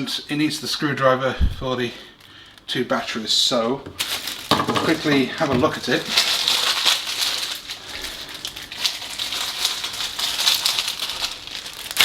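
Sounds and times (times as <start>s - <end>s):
plastic rustling and crinkling: 3.8s - 12.0s.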